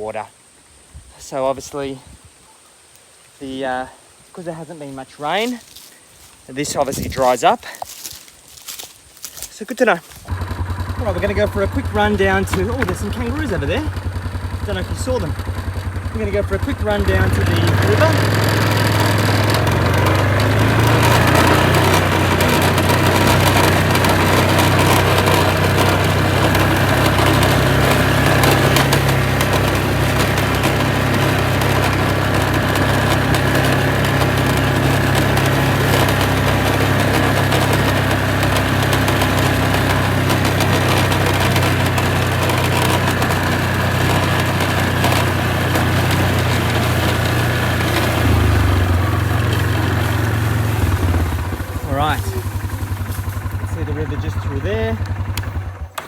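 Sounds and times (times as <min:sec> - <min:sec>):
small vehicle engine running: 0:07.9 - 0:56.0.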